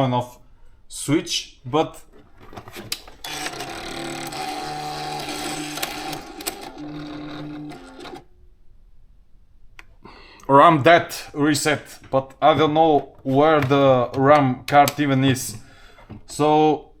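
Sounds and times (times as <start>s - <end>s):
typewriter mechanism whirring: 2.8s - 8.2s
typewriter clicks: 2.9s - 8.2s.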